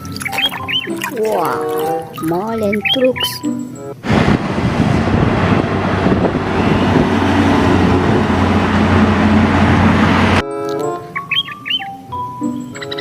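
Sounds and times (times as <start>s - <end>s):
truck engine rumbling: 4.0s - 10.4s.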